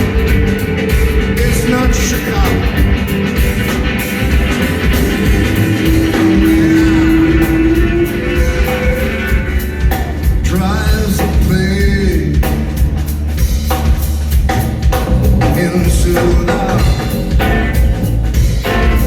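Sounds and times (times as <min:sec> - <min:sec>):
sliding pitched sounds: 0:00.0 - 0:10.6
bass line: 0:00.0 - 0:19.0
drum kit beat: 0:00.0 - 0:19.0
rock band playing: 0:00.0 - 0:19.0.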